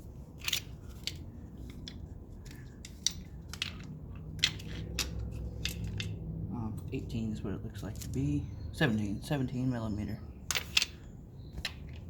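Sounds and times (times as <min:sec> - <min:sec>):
metal tools clicking and clinking: 0:00.4 - 0:06.2, 0:10.5 - 0:12.0.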